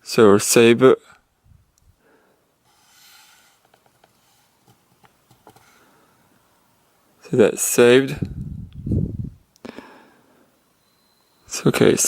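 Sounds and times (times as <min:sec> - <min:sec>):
soft rustle: 0:02.6 - 0:06.4.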